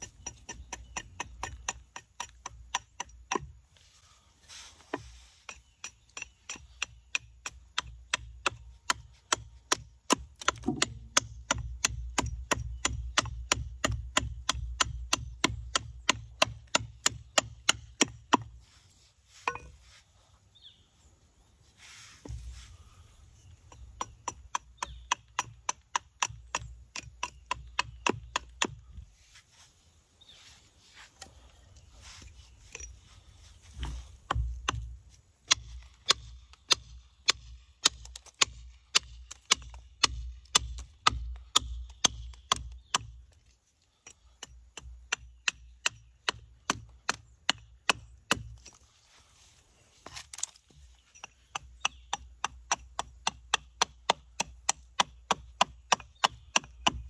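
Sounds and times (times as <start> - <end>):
hand tool chopping wood: 0.0 - 3.6, 4.8 - 18.6, 23.6 - 28.8, 33.7 - 43.2, 44.0 - 48.8, 50.0 - 57.0.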